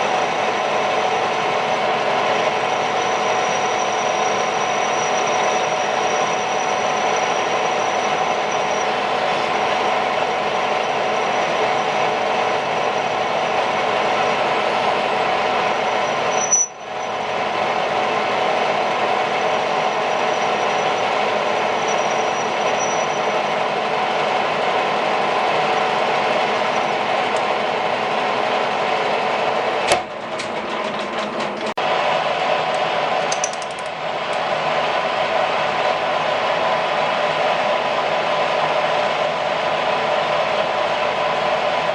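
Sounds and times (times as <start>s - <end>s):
sharp click: 33.3s - 34.4s.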